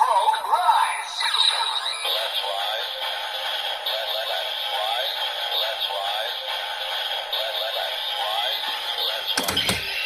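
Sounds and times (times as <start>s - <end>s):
tinny electronic music from toy speaker: 0.0s - 10.0s.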